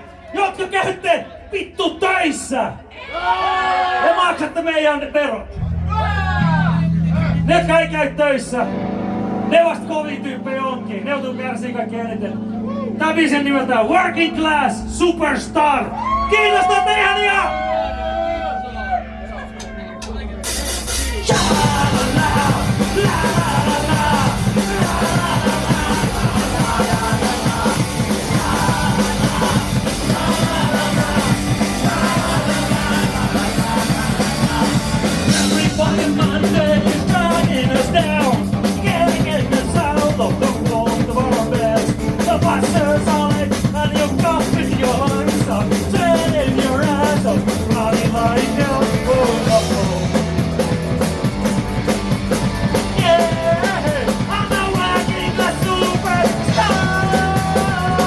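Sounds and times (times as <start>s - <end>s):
live rock band playing: 5.6s - 13.8s, 19.0s - 58.0s
person singing: 21.0s - 50.2s, 52.7s - 58.0s.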